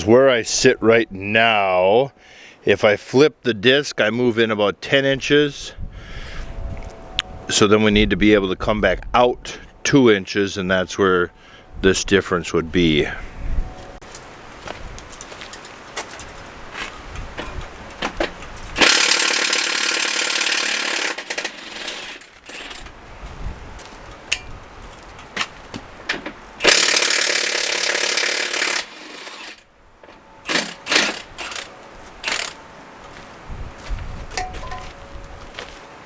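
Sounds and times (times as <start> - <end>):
tools and metal parts clanking: 24.3 - 24.6, 34.4 - 35.0.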